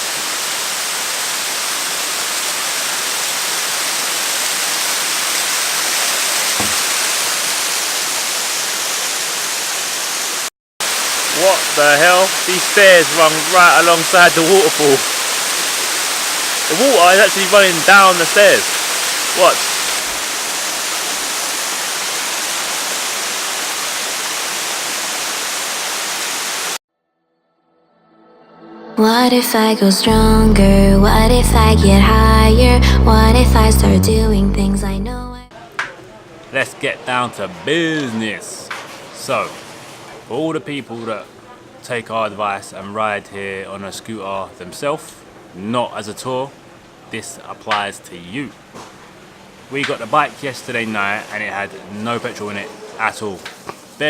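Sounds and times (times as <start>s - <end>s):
waterfall rushing: 0.0s - 26.8s
soft thump: 6.6s - 6.8s.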